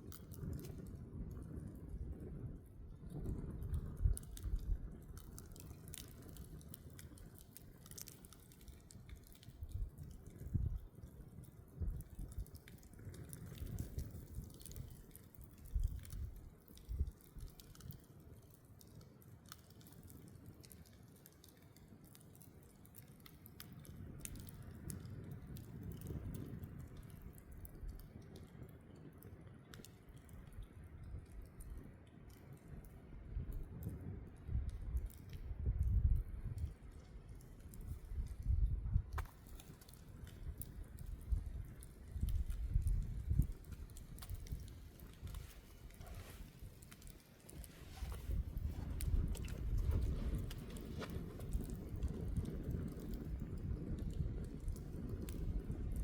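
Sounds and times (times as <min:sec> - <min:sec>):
wind buffeting microphone: 0:00.0 - 0:17.8, 0:32.8 - 0:56.0
campfire crackling: 0:00.0 - 0:56.0.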